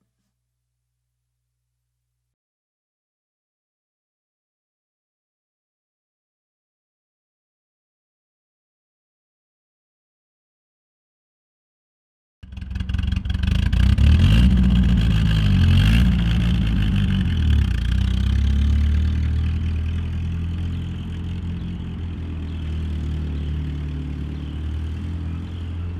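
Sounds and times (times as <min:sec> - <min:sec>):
car engine running: 0:12.4 - 0:25.9.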